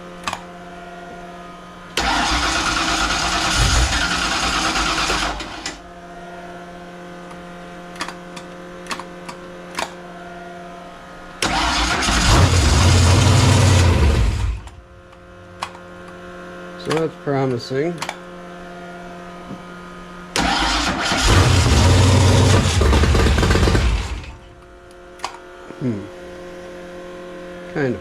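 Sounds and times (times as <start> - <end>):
car engine starting and dying: 2.0 - 5.8, 11.4 - 14.8, 20.4 - 24.5.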